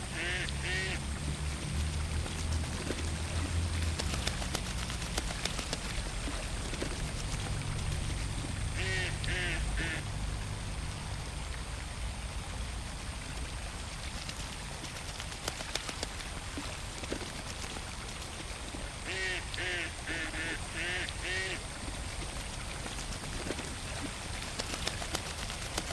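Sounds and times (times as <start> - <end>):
water drips and splashes: 0.0 - 25.9
water noise: 0.0 - 25.9
ducks quacking: 0.1 - 1.0, 8.2 - 10.2, 19.0 - 21.7.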